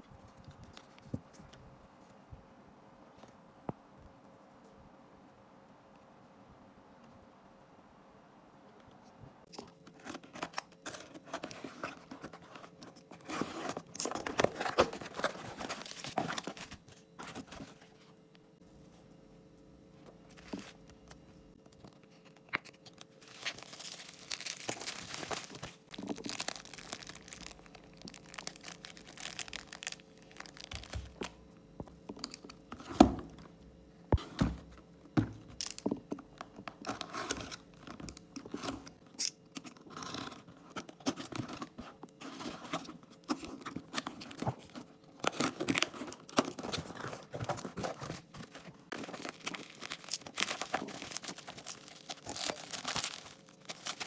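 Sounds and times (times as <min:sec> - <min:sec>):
wrappers tearing and crinkling: 0:13.6 - 0:16.8, 0:22.8 - 0:31.3, 0:48.9 - 0:54.0.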